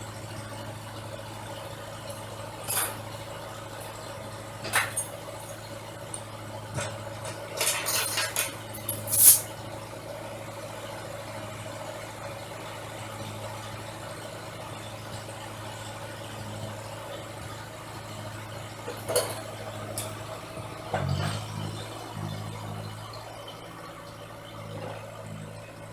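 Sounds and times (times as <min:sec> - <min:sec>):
vehicle engine idling: 0:00.0 - 0:25.9
short clanks and rattles: 0:06.7 - 0:09.5, 0:18.8 - 0:21.7.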